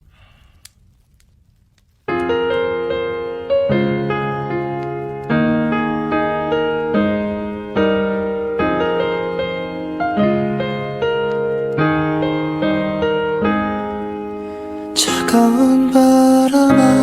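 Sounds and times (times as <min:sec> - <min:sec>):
faint hiss: 0:00.0 - 0:02.1
sustained piano chords: 0:02.1 - 0:17.0.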